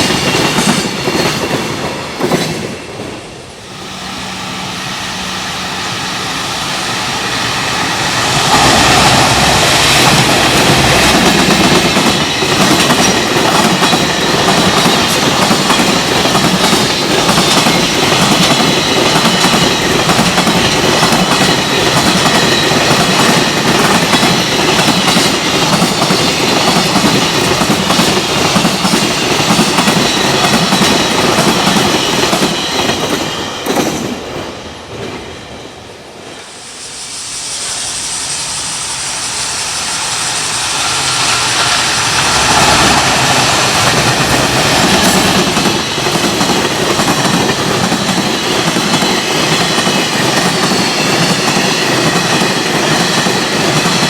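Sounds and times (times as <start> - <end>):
electric locomotive motor hum: 3.6 - 17.4, 36.7 - 47.9.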